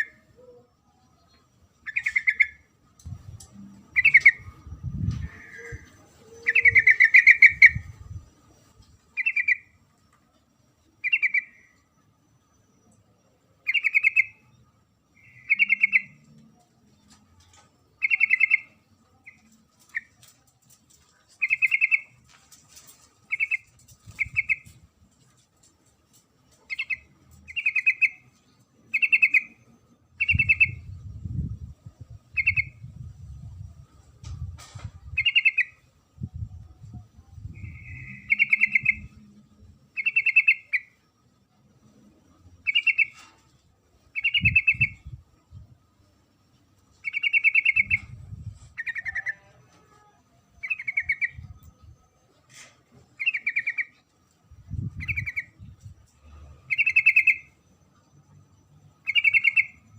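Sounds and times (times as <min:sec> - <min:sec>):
bird chattering chirps: 0:01.8 - 0:02.6, 0:37.6 - 0:39.1, 0:54.9 - 0:55.5, 0:56.7 - 0:57.5, 0:59.0 - 0:59.8.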